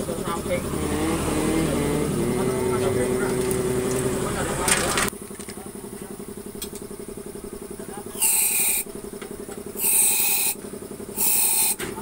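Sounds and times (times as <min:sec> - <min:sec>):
motorcycle engine idling: 0:00.0 - 0:12.0.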